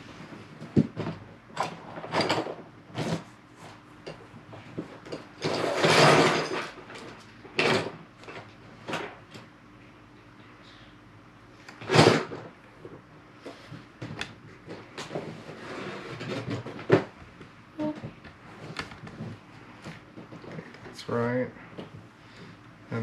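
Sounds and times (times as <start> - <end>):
rustling scrape: 14.8 - 16.8.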